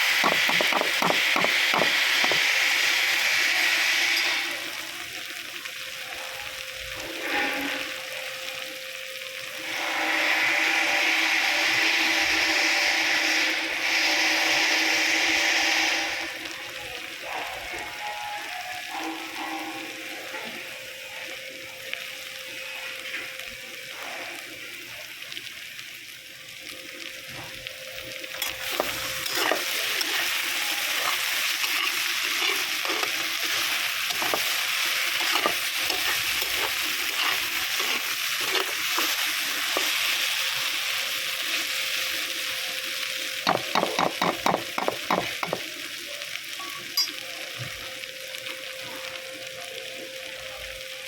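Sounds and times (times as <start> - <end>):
vegetables sizzling in oil: 0.0 - 51.0
spatula knocking against pan: 43.5 - 45.6.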